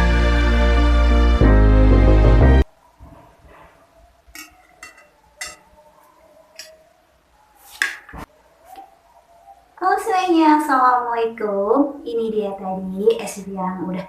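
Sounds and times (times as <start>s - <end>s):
background music: 0.0s - 2.7s.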